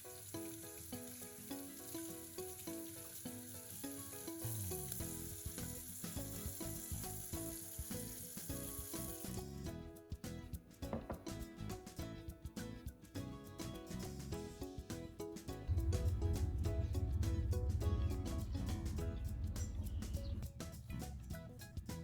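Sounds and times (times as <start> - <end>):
chicken gizzards sizzling in a pan: 0.0 - 9.6
background music: 0.0 - 22.0.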